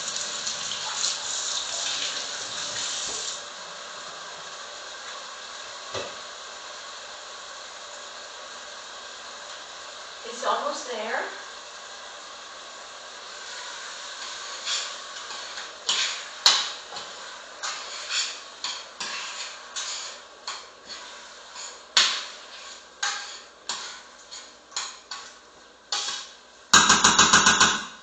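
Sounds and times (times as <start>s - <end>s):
food sizzling in a frying pan: 0.0s - 28.0s
utensil scraping pan: 14.2s - 25.3s, 25.9s - 26.3s
utensil knocking against pan: 26.7s - 27.9s.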